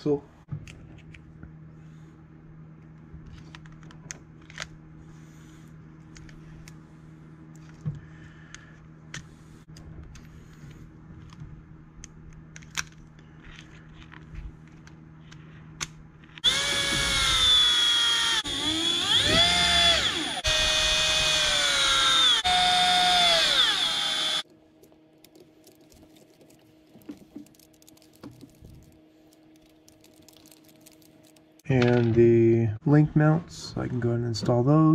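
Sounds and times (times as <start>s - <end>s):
electric screwdriver driving screws: 16.4s - 24.4s
small parts clicking: 23.2s - 32.1s.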